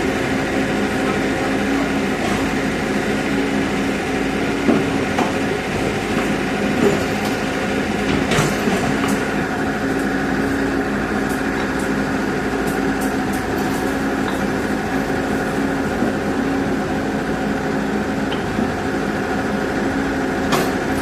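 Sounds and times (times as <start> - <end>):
diesel engine running: 0.0 - 21.0
knocks and clanks: 4.6 - 9.5.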